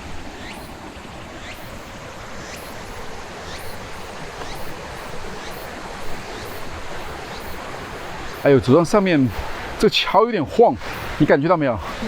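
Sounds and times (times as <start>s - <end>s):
fast river rushing: 0.0s - 12.0s
faint high ticks: 3.5s - 5.6s.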